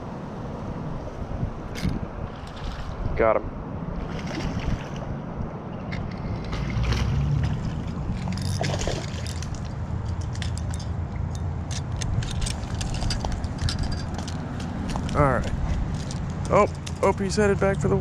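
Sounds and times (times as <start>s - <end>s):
steady low rumble: 0.0s - 18.0s
fish splashing and thrashing: 5.8s - 17.0s
light clicks and rattles: 8.2s - 17.2s.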